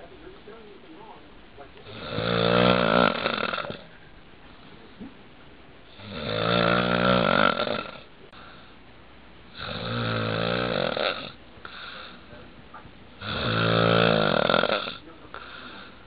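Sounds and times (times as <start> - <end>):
man snoring: 1.8 - 3.9, 5.9 - 8.6, 9.5 - 12.3, 13.2 - 16.0.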